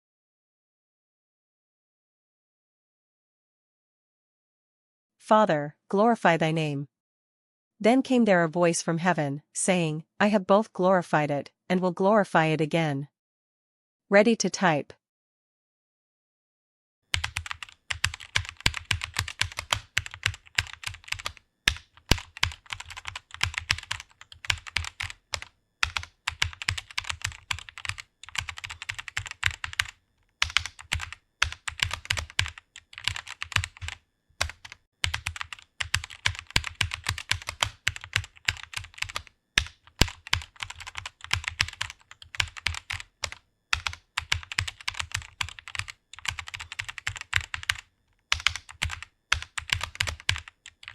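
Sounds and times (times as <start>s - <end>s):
fast typing on keyboard: 17.1s - 50.9s.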